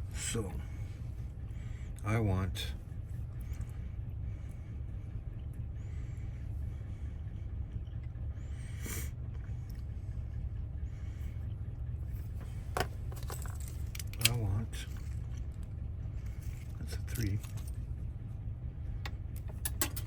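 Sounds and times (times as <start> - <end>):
steady low hum: 0.0 - 20.0
metal lock parts clicking: 12.8 - 14.5, 19.4 - 20.0.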